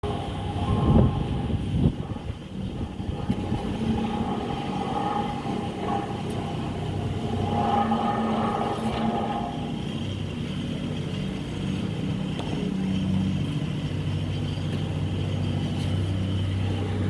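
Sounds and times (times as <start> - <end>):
road repair machinery drone: 0.0 - 17.0.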